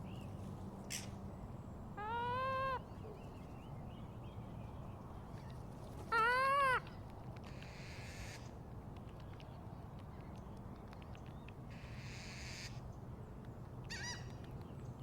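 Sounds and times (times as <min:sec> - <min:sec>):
gull mewing cries: 0:02.0 - 0:02.8.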